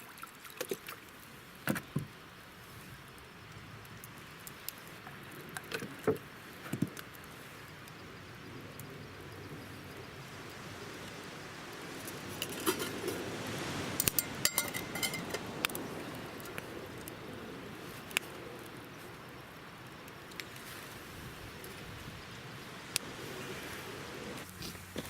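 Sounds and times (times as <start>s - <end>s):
cookware and utensils clinking: 14.0s - 15.5s.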